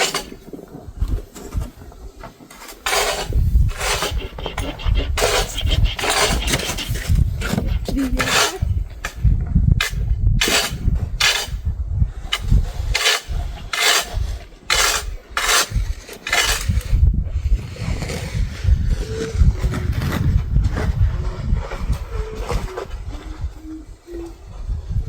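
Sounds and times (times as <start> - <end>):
snow shovels scraping pavement: 0.0 - 8.7, 12.7 - 22.9.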